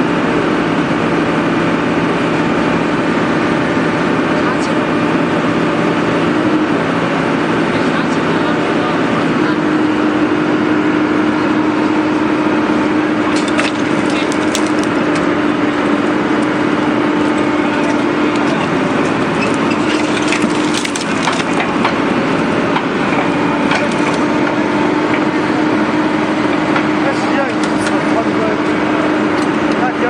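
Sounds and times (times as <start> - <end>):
excavator engine and hydraulics hum: 0.0 - 30.0
concrete cracking and snapping: 17.2 - 22.0.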